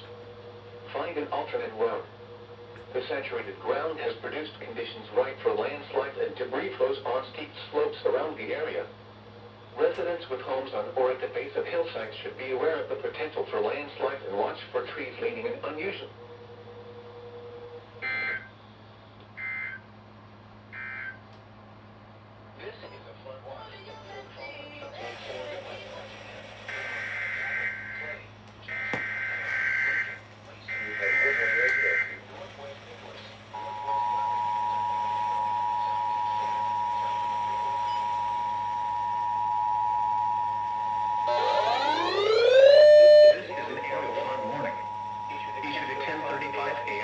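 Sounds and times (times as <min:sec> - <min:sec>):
low steady hum: 0:00.0 - 0:47.0
two-tone broadcast alarm: 0:18.0 - 0:18.5, 0:19.4 - 0:19.8, 0:20.7 - 0:21.2, 0:26.7 - 0:32.2, 0:33.5 - 0:47.0
rising siren-like sweep: 0:33.6 - 0:47.0
two-tone digital warbles: 0:41.2 - 0:47.0.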